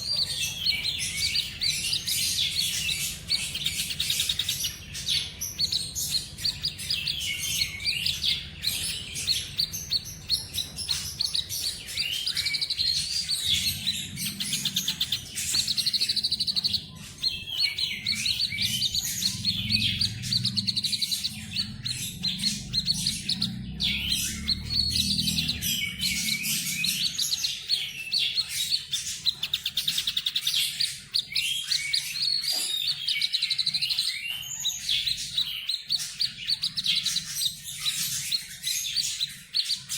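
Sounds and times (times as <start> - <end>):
bird singing trills and whistles: 0.0 - 39.9
low background rumble: 12.7 - 27.5.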